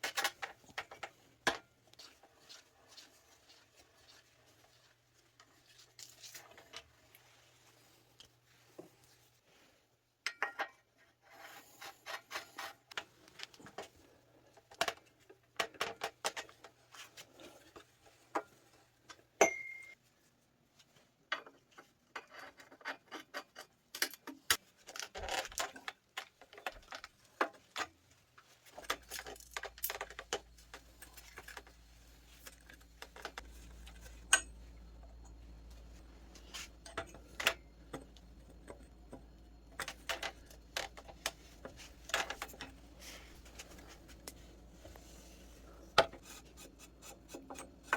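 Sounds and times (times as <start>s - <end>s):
ringing metal clink: 19.4s - 20.0s
low steady hum: 28.8s - 47.9s
metal tools clicking and clinking: 32.4s - 35.4s.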